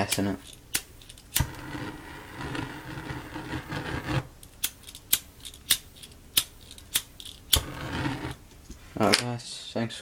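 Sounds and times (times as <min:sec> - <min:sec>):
lighter flame hissing: 0:00.1 - 0:04.8, 0:06.5 - 0:08.4.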